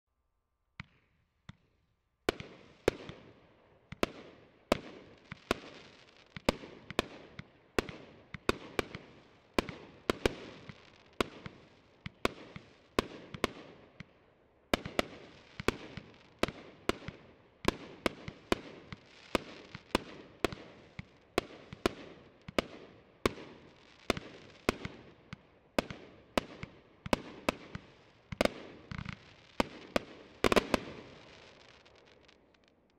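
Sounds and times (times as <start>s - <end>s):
fireworks bangs: 25.9s - 32.7s.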